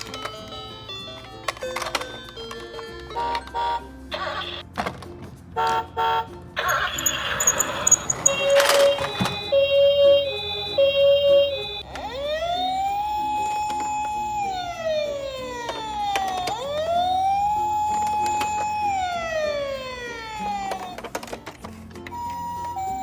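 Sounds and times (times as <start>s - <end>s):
short beeping tones: 6.6s - 11.8s
wailing siren: 6.6s - 21.0s, 22.1s - 23.0s.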